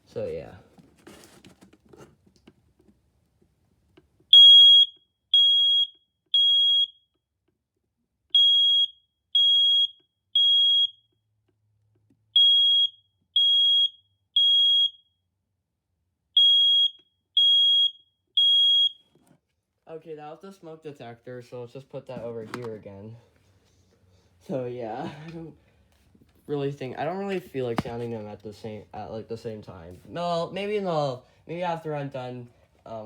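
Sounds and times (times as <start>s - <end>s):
smoke detector alarm beeps: 4.3s - 7.1s, 8.3s - 11.1s, 12.4s - 15.1s, 16.4s - 19.0s.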